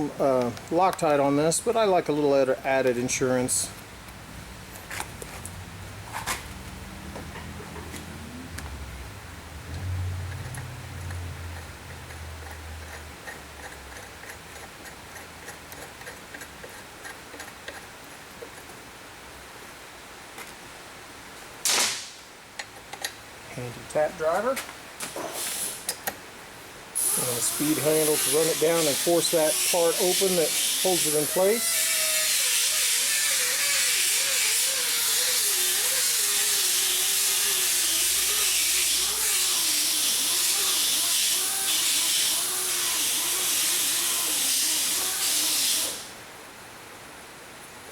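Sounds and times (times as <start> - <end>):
steady hissing: 23.4 - 26.1, 26.9 - 46.3.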